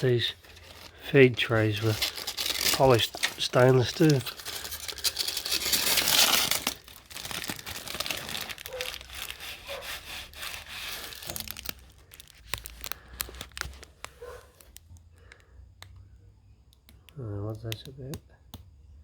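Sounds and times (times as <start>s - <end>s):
plastic film peeling and crinkling: 0.0s - 15.4s
light clicks and taps: 16.7s - 18.7s.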